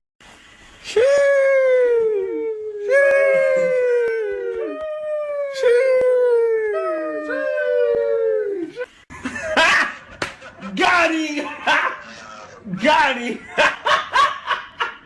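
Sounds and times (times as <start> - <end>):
dog howling: 2.0 - 8.9.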